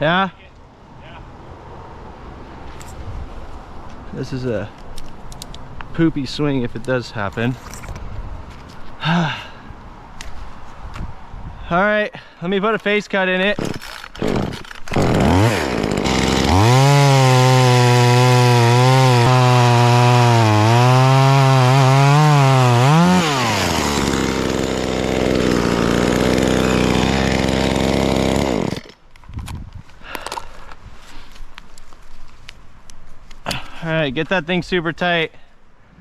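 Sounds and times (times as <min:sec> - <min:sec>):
chainsaw cutting tree: 0:13.6 - 0:28.9
chainsaw idling: 0:13.6 - 0:28.9.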